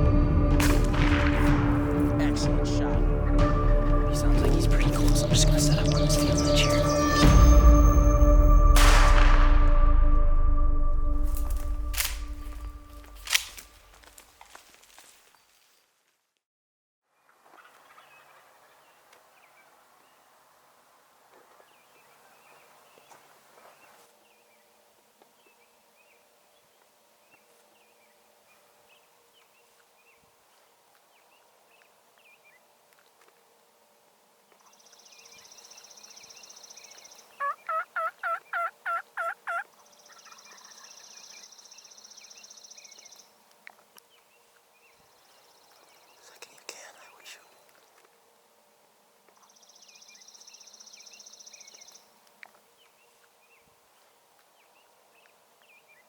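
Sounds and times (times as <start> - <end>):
turkey calling: 3.7 - 7.3, 37.4 - 41.0.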